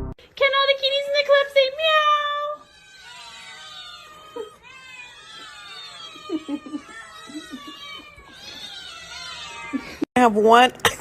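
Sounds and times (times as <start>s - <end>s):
cats meowing: 1.9s - 10.1s.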